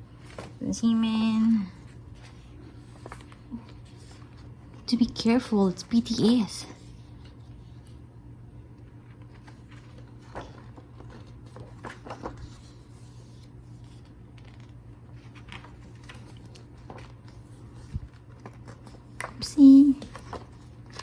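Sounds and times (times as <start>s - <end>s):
steady low hum: 0.0s - 21.0s
paper packaging rustling: 0.2s - 4.8s, 8.9s - 21.0s.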